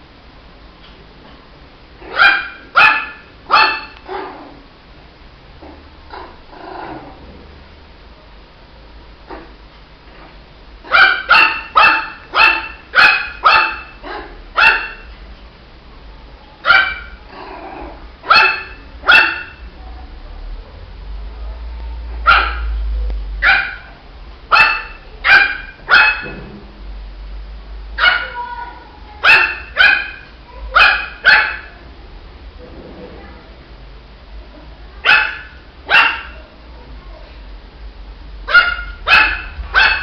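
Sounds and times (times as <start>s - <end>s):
puppy yapping: 2.0s - 4.6s, 10.9s - 15.1s, 16.6s - 19.6s, 22.2s - 22.7s, 23.4s - 26.4s, 28.0s - 31.8s, 35.0s - 36.5s, 38.5s - 40.0s.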